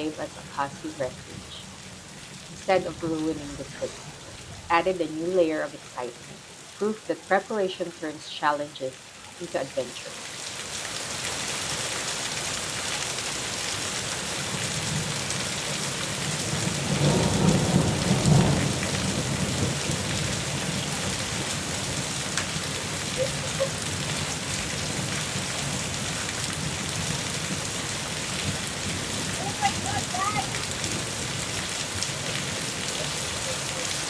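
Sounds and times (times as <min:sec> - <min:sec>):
rain falling: 0:00.0 - 0:34.0
thunder rumble: 0:16.3 - 0:33.6.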